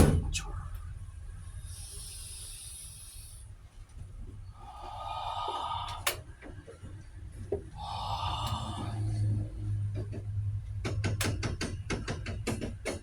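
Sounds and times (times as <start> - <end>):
low rumble: 0.0 - 5.9, 7.7 - 10.7
person breathing out hard: 1.7 - 3.6, 4.6 - 6.3, 7.8 - 9.6.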